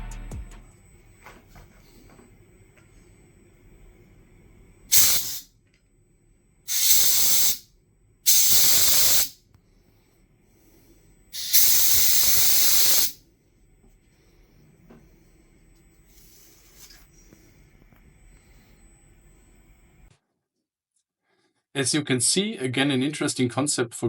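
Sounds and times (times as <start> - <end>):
compressed air blow gun hissing: 4.9 - 5.5, 6.7 - 7.6, 8.3 - 9.4, 11.3 - 13.2.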